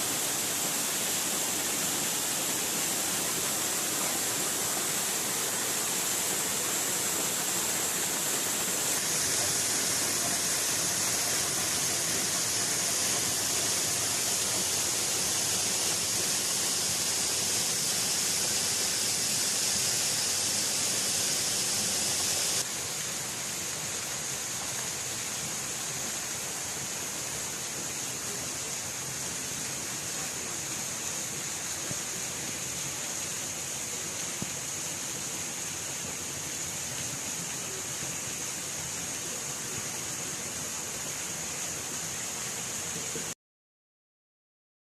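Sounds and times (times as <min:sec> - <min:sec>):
waterfall rushing: 0:00.0 - 0:22.7.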